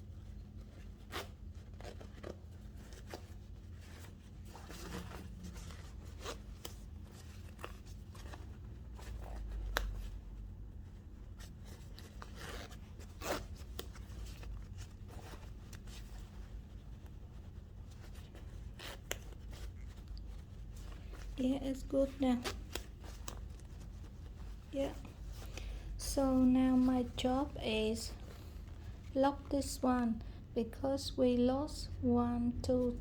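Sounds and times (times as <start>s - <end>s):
zipper clicking and scraping: 11.9s - 13.9s.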